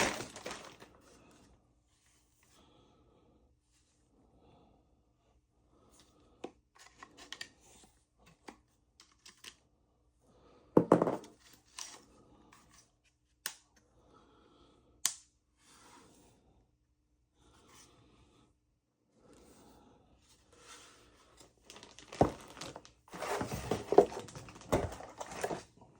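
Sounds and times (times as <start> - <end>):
packaging rustling and tearing: 0.0 - 1.0, 21.6 - 25.8.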